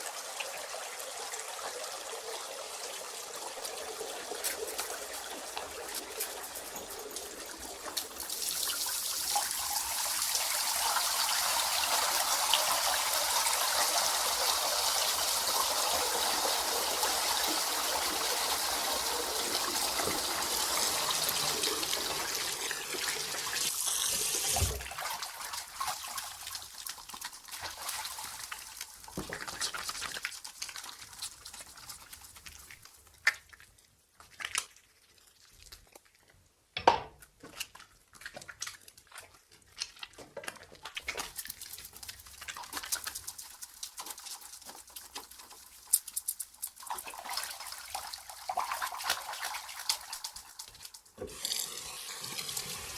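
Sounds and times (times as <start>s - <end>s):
water drips and splashes: 0.0s - 36.4s, 37.3s - 52.9s
tap water running over hands: 3.3s - 32.6s, 41.0s - 52.9s.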